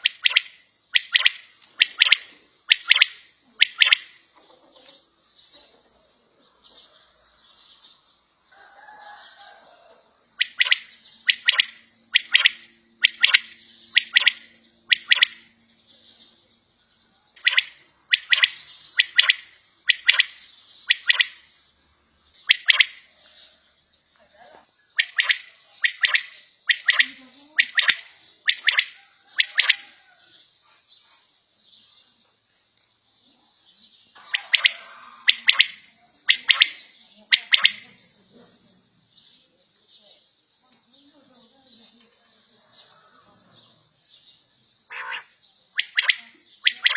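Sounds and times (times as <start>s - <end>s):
quail calling: 0.0s - 5.0s, 10.4s - 15.6s, 17.4s - 21.5s, 22.4s - 23.1s, 24.9s - 30.2s, 34.2s - 38.0s, 44.9s - 46.9s.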